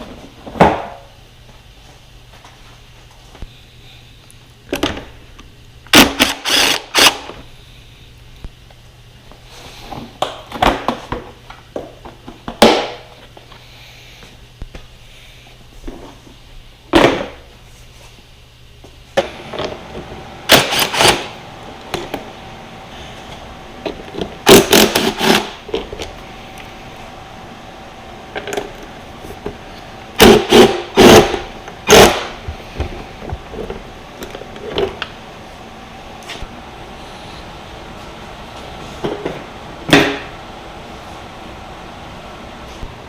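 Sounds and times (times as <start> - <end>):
faint steady hum: 0.0 - 43.0.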